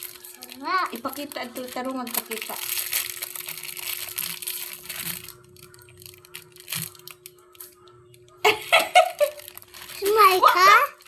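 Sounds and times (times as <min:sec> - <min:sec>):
packaging tearing and crinkling: 0:00.0 - 0:07.8, 0:09.0 - 0:11.0.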